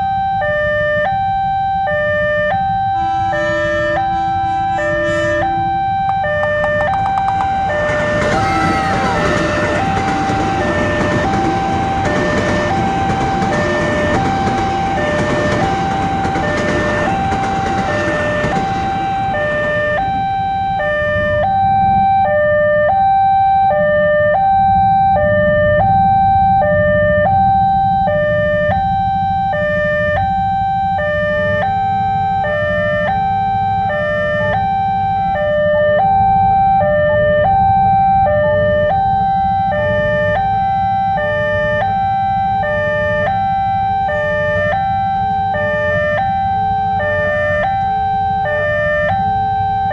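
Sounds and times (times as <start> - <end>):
railway crossing warning alarm: 0.0 - 49.9.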